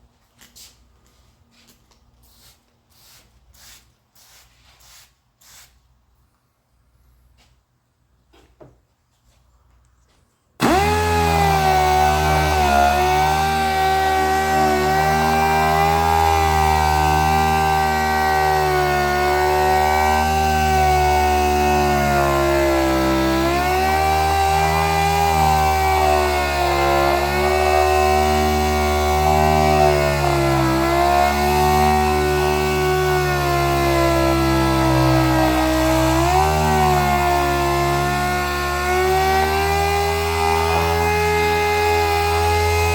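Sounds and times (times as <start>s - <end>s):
electric power sander running: 10.6s - 42.9s.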